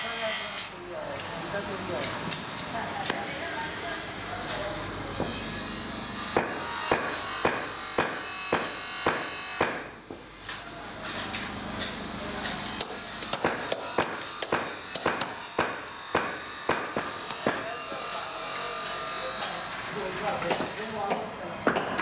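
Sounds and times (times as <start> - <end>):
workshop noise: 0.0 - 22.0
hammer striking metal: 6.4 - 9.9, 12.8 - 18.0.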